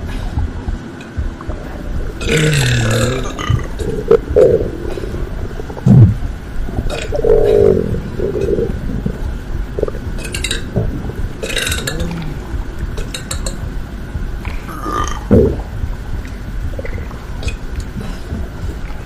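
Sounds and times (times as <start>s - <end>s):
low rumble: 0.0s - 19.0s
person burping: 2.2s - 5.1s, 11.4s - 13.4s
clicking mouth noises: 11.4s - 13.6s.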